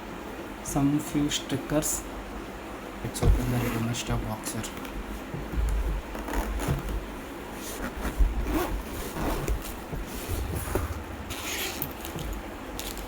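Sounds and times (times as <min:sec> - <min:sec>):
packaging scraping and rustling: 0:07.7 - 0:13.0.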